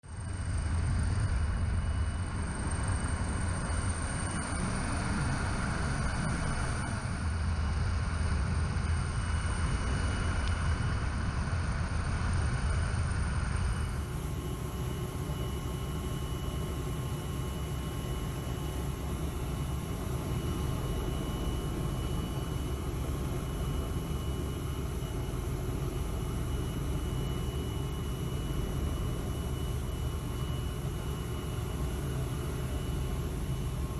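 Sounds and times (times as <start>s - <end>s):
helicopter engine and rotor: 0.1s - 33.9s.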